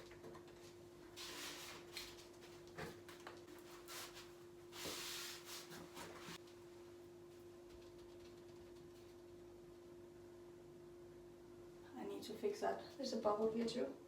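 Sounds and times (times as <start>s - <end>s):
rubbing and rustling strokes: 1.0s - 2.7s, 3.4s - 6.4s
faint steady hum: 6.0s - 14.0s.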